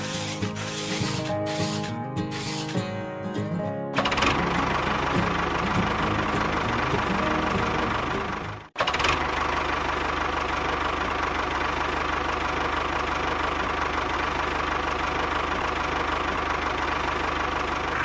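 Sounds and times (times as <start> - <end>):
small motor rattling: 0.0 - 2.8.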